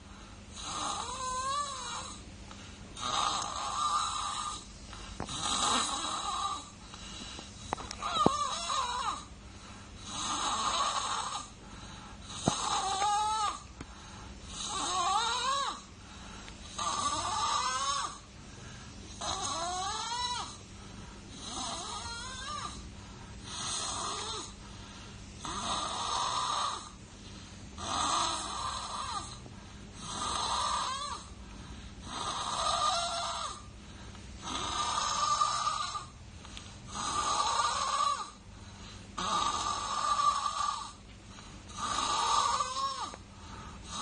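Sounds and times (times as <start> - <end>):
baby snoring: 0.5 - 2.2, 3.0 - 9.3, 10.0 - 11.6, 12.2 - 13.8, 14.5 - 18.3, 19.1 - 20.6, 21.3 - 24.6, 25.4 - 27.0, 27.8 - 31.4, 32.0 - 33.7, 34.4 - 36.2, 36.9 - 38.4, 39.2 - 41.0, 41.6 - 44.0.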